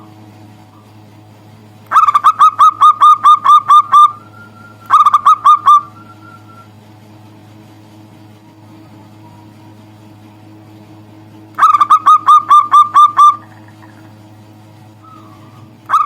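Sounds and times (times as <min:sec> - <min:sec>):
dove cooing: 0:01.9 - 0:06.7, 0:11.6 - 0:14.2, 0:15.0 - 0:16.0.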